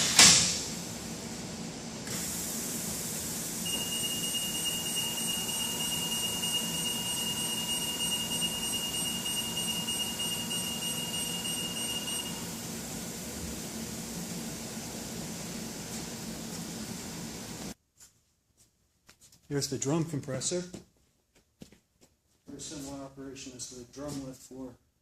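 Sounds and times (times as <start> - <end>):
drum lift machine running: 0.0 - 17.8
high-pitched warning tone: 3.6 - 12.6.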